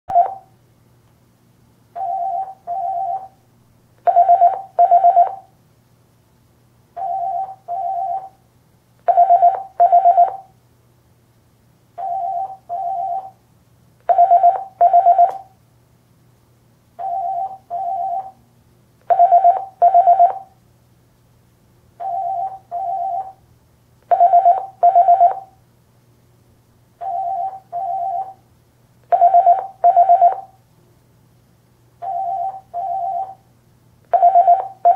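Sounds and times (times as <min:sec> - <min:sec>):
telephone ringing: 0:00.1 - 0:00.5, 0:02.0 - 0:03.4, 0:04.0 - 0:05.5, 0:07.0 - 0:08.4, 0:09.1 - 0:10.5, 0:12.0 - 0:13.4, 0:14.1 - 0:15.6, 0:17.0 - 0:18.4, 0:19.1 - 0:20.6, 0:22.0 - 0:23.4, 0:24.1 - 0:25.6, 0:27.0 - 0:28.4, 0:29.1 - 0:30.6, 0:32.0 - 0:33.4, 0:34.1 - 0:34.9
faint steady hum: 0:00.1 - 0:34.9.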